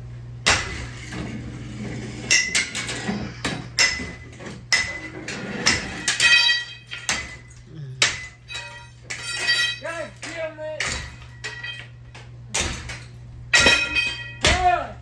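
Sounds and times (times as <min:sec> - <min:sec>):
blows striking ceiling fan: 0:00.4 - 0:15.0
metallic clanging ring: 0:03.8 - 0:12.7, 0:13.5 - 0:14.7.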